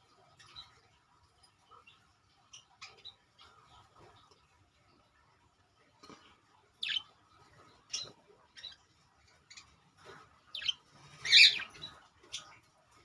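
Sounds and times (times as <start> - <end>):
budgerigar chirping: 10.6 - 11.9.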